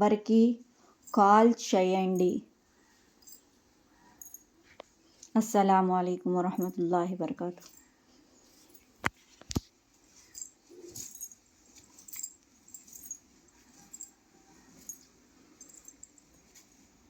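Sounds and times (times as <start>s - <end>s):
light metallic rattling: 2.9s - 4.8s, 7.6s - 17.0s.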